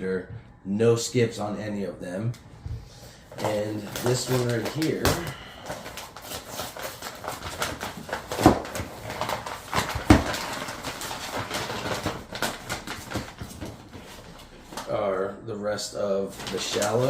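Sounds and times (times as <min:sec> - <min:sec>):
packaging rustling: 0:03.3 - 0:15.0, 0:16.2 - 0:17.0.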